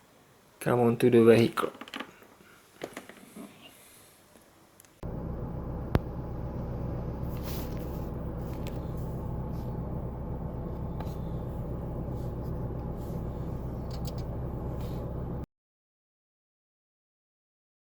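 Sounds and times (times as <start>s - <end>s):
car engine idling: 5.0s - 15.5s.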